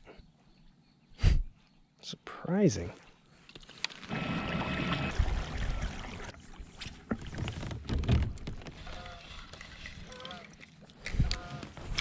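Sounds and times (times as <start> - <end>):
water sloshing against hull: 3.6 - 12.0.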